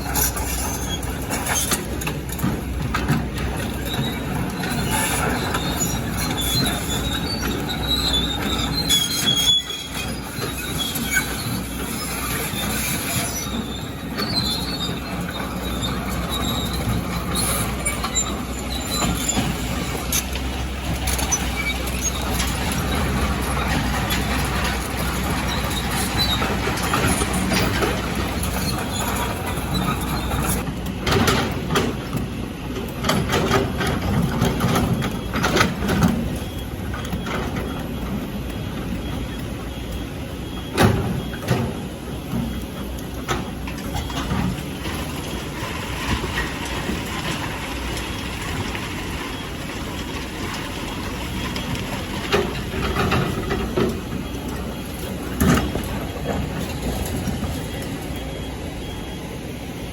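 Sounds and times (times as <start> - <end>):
high metal squeals: 0.0 - 2.5, 3.4 - 30.6
diesel engine running: 0.0 - 59.9.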